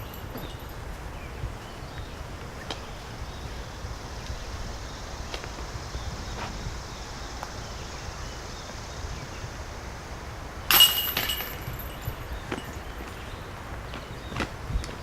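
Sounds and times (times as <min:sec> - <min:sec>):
disc striking metal chains: 0:00.0 - 0:00.8, 0:10.7 - 0:12.9.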